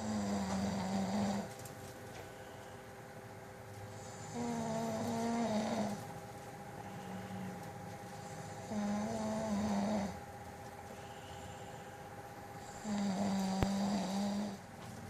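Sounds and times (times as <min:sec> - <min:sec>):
droning snoring: 0:00.0 - 0:01.6, 0:03.9 - 0:06.1, 0:06.7 - 0:14.7.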